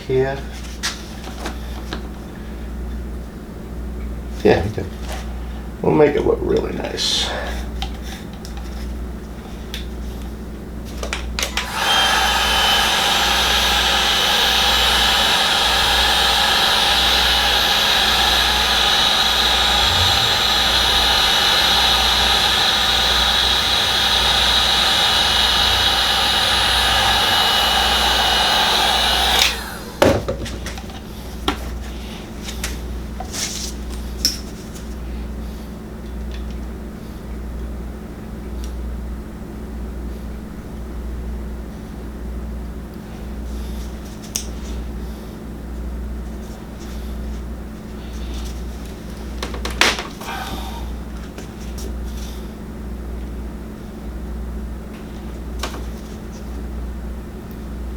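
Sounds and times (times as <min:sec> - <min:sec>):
heat gun fan whine: 0:00.0 - 0:57.9.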